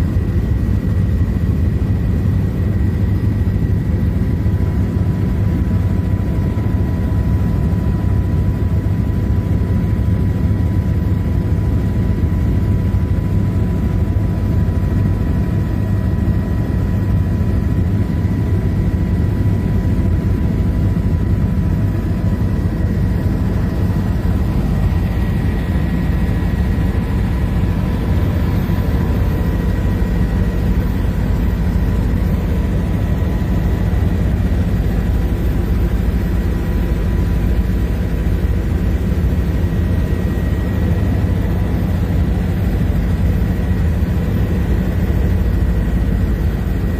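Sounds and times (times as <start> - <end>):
helicopter rumble: 0.0 - 46.9
high whine: 21.0 - 40.3.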